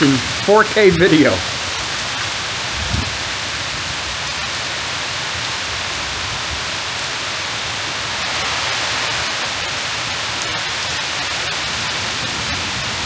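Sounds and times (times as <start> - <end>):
heavy rain pouring: 0.0 - 13.0.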